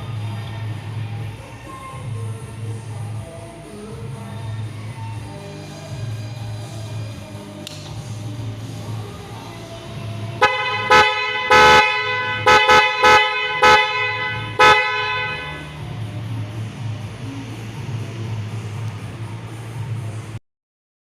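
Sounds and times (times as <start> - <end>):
loud horn honks: 10.4 - 15.9.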